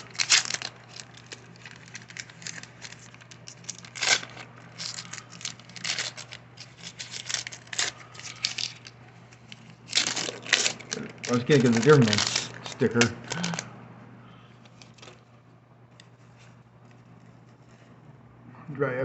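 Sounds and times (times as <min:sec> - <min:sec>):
paper pack tearing and crinkling: 0:00.0 - 0:13.7, 0:14.6 - 0:15.2.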